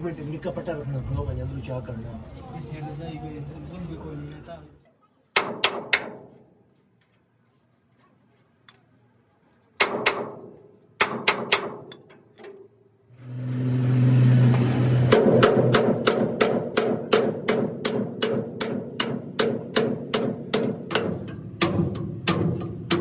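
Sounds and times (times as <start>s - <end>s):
hammer blows on steel: 14.5s - 23.0s.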